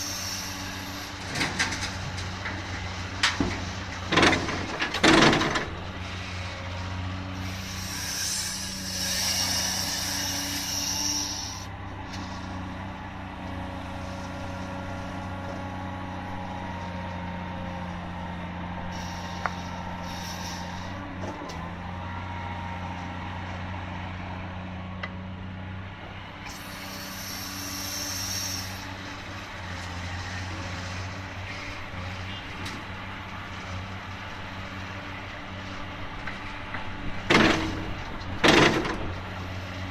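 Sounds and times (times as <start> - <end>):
loud hiss: 0.0 - 1.2, 7.4 - 11.7, 18.9 - 21.0, 26.5 - 28.9
excavator diesel engine running: 0.0 - 39.9.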